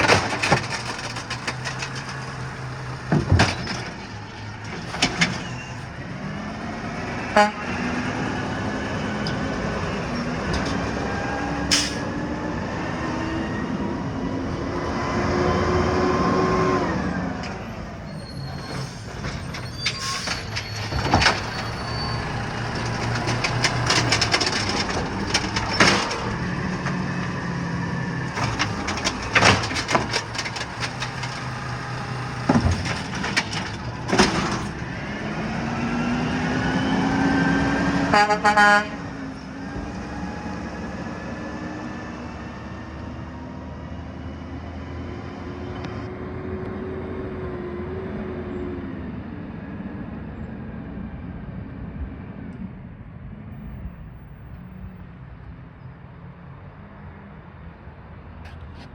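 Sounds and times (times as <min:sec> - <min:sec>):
sharp knocks and clanks: 0:00.0 - 0:05.6, 0:28.3 - 0:34.8
truck engine revving: 0:00.0 - 0:19.5, 0:20.4 - 0:48.4.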